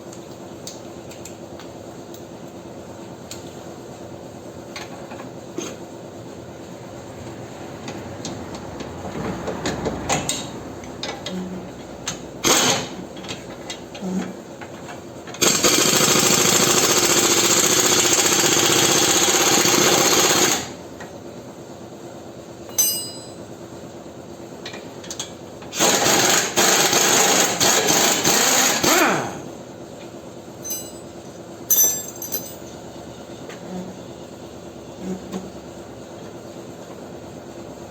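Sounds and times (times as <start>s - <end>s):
metallic clanks of hand tools: 22.7s - 23.4s, 30.6s - 32.7s
air-powered tool hammering: 25.8s - 29.5s.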